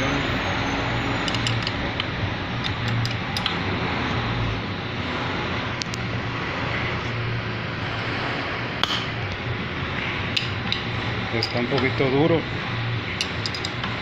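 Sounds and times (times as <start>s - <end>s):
background traffic: 0.0s - 14.0s
wrench clicking on bolt: 1.2s - 1.8s, 13.2s - 13.8s.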